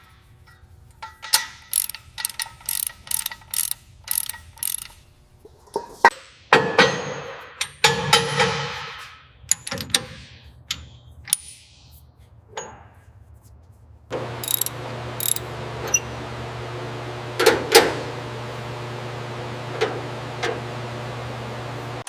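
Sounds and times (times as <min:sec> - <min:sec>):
metal tool clanks: 0:00.4 - 0:05.0, 0:14.2 - 0:16.1
machine hum: 0:14.1 - 0:22.0.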